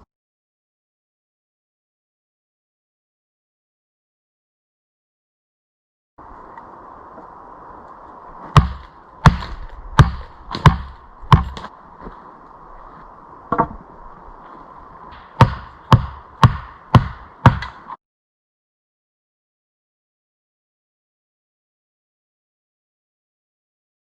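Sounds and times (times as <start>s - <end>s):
low hiss: 6.2s - 18.0s
axe chopping wood: 8.5s - 11.7s, 15.2s - 17.9s.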